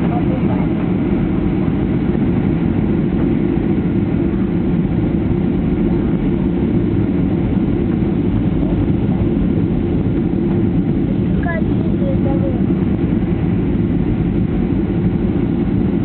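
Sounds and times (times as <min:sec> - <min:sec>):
jet airliner cabin noise: 0:00.0 - 0:16.0.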